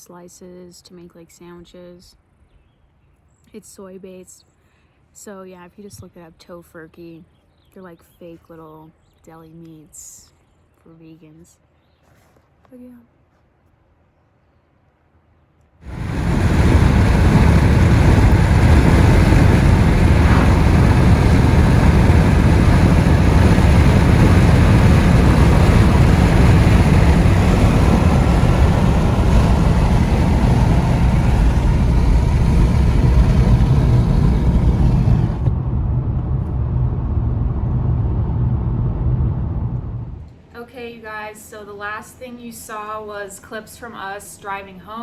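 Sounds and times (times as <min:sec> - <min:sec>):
road and wind noise: 0:15.9 - 0:40.4.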